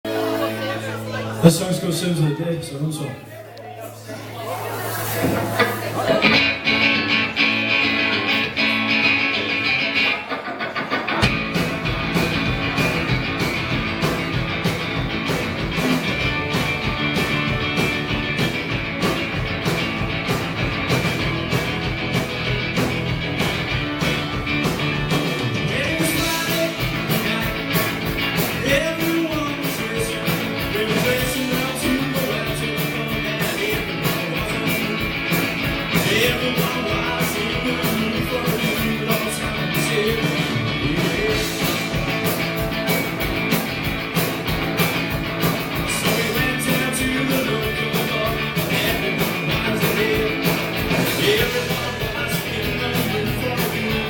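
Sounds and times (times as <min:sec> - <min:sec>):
live rock band playing: 0:00.0 - 0:02.3, 0:03.3 - 0:54.0
drum beat: 0:11.1 - 0:54.0
person singing: 0:25.5 - 0:42.0, 0:45.8 - 0:54.0.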